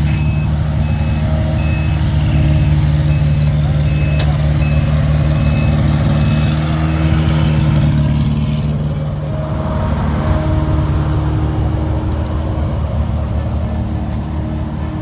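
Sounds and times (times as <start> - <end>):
reversing alarm beeping: 0.0 - 7.1
heavy diesel machinery running: 0.0 - 15.0.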